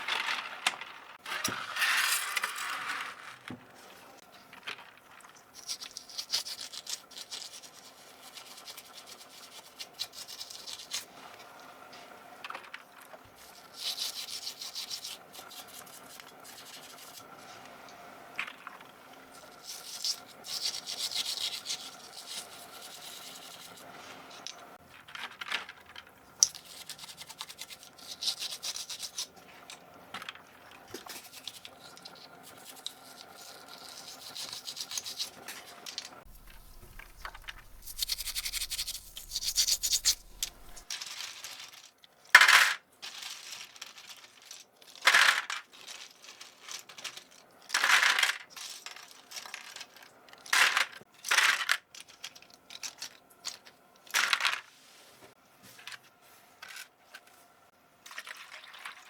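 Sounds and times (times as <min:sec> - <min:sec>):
scrubbing plastic keyboard parts: 0:31.0 - 0:40.9.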